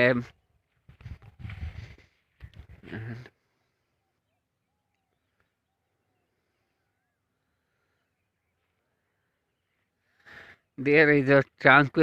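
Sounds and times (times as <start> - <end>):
faint bird chirps: 2.9 - 10.8.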